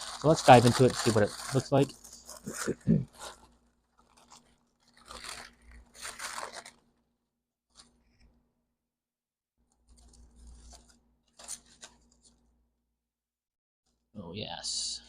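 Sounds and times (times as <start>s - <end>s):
paper wrapper crinkling and tearing: 0.0s - 7.1s, 7.7s - 8.0s, 9.7s - 12.4s.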